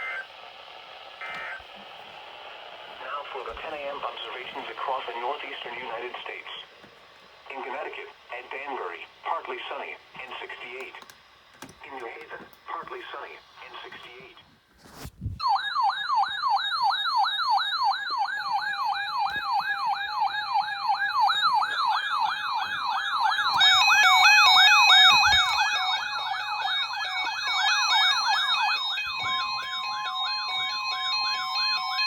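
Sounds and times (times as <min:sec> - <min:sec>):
electronic siren wailing: 0:00.0 - 0:00.4, 0:01.1 - 0:01.8, 0:15.4 - 0:32.0
high alarm tones: 0:01.2 - 0:01.7, 0:15.4 - 0:32.0.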